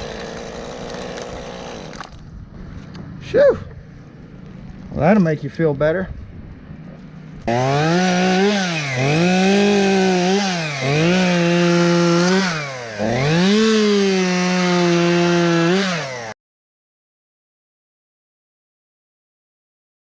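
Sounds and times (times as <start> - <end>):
chainsaw running at high revs: 0.0 - 2.2, 7.4 - 16.4.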